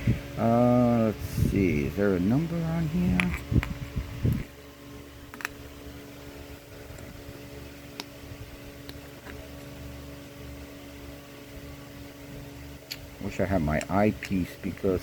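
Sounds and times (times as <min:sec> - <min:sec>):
steady mechanical hum: 0:00.0 - 0:15.0.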